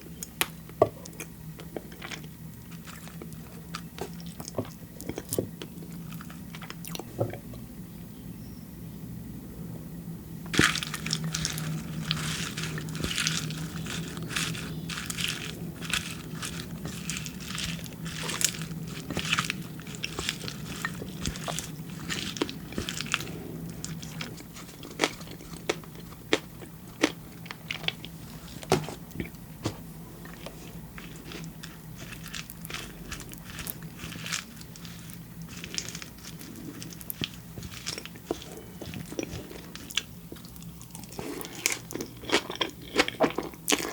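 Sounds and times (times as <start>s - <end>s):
wet chewing clicks: 10.5s - 28.2s, 30.2s - 43.9s.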